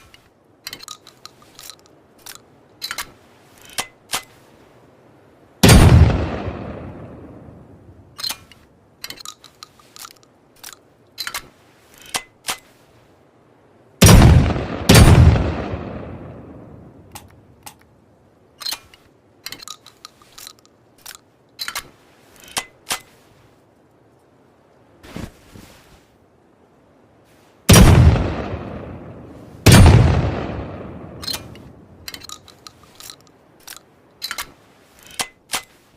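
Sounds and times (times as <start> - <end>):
metallic gun handling clicks: 0.0 - 4.5, 8.1 - 12.8, 17.0 - 17.9, 18.5 - 23.2, 31.1 - 35.9.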